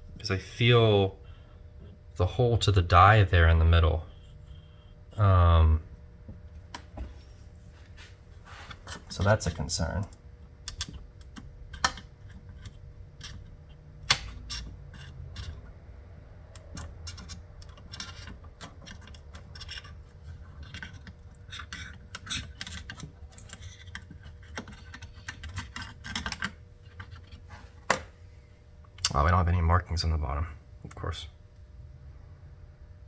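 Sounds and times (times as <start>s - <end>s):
small clicks taps and scratches: 8.7s - 15.8s, 16.5s - 28.1s.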